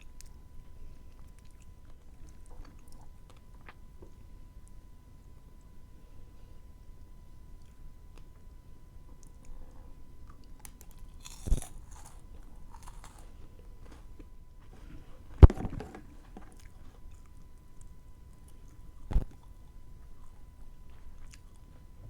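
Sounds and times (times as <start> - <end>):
crunching and chewing: 0.0 - 5.8, 7.5 - 22.0
crisp bites into chocolate: 10.7 - 14.1.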